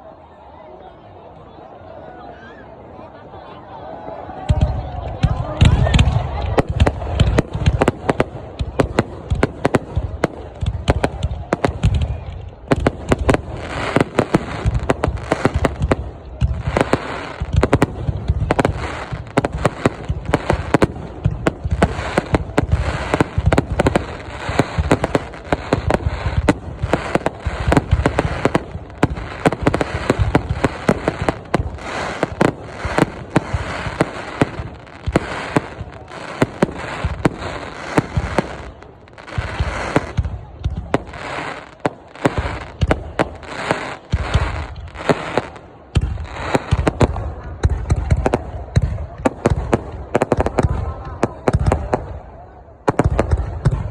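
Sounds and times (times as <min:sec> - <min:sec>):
fireworks banging: 0:04.4 - 0:53.9.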